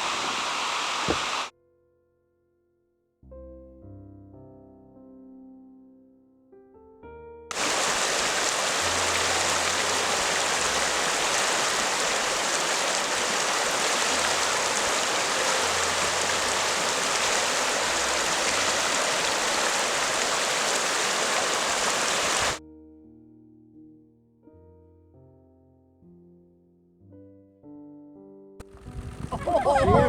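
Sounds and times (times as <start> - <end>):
water rushing: 0.0 - 1.5, 7.5 - 22.6.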